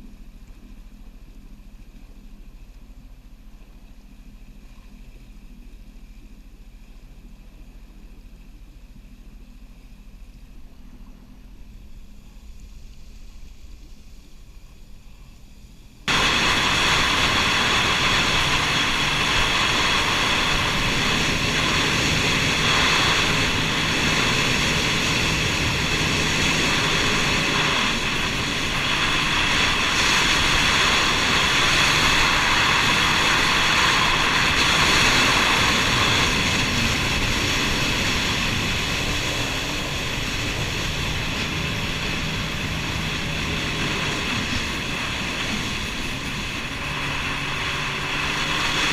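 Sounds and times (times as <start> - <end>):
jet ski engine whining: 0.1 - 48.9
dense rushing noise: 16.0 - 48.9.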